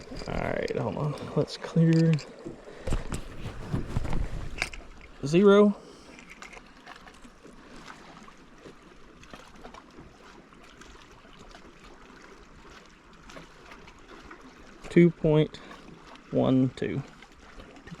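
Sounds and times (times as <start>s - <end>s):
light clicks and knocks: 0.0s - 5.1s
water lapping against boat hull: 0.0s - 18.0s.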